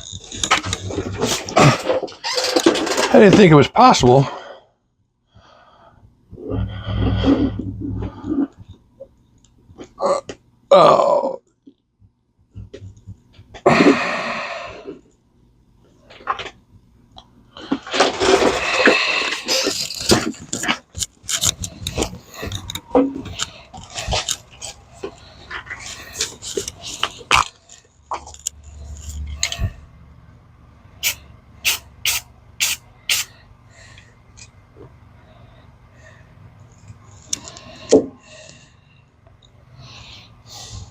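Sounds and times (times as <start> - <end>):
low hum: 5.9 - 9.8
handling clicks and rustling: 17.6 - 29.8
spray paint hissing bursts: 31.0 - 33.3.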